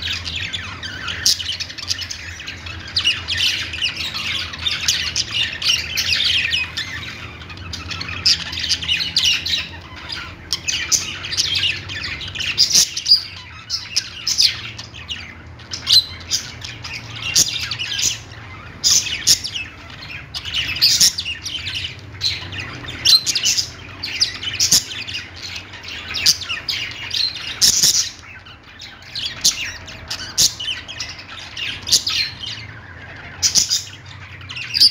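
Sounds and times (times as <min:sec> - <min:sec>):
parrot squawks: 0:00.0 - 0:34.9
parrots chattering: 0:00.0 - 0:34.9.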